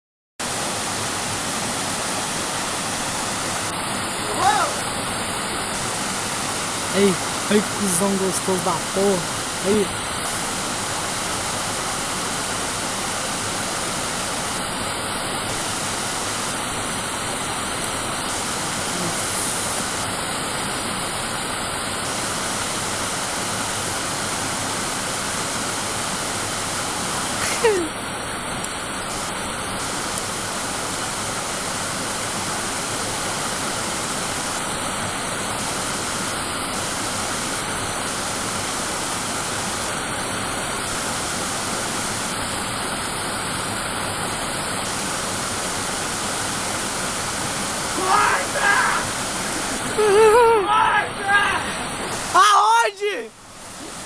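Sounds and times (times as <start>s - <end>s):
waterfall rushing: 0.4s - 54.0s.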